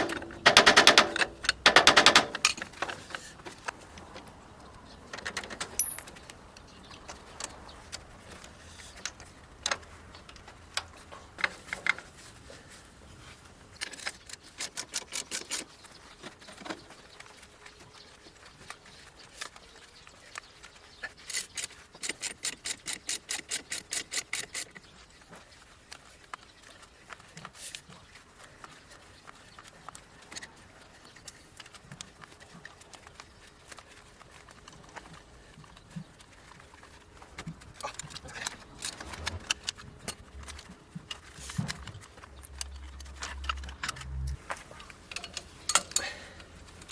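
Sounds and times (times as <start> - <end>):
metal tools clinking: 5.1 - 6.3, 37.8 - 46.9.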